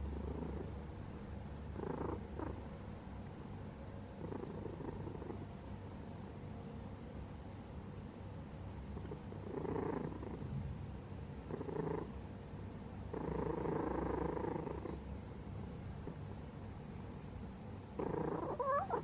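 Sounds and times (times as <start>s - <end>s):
cat purring: 0.0s - 3.5s, 4.1s - 5.6s, 8.8s - 10.6s, 11.2s - 16.4s, 17.8s - 19.0s.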